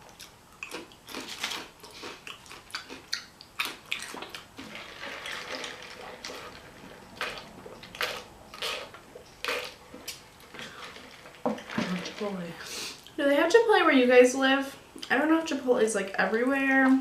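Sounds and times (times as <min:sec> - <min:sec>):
wet chewing and mouth smacking: 0:00.0 - 0:10.5.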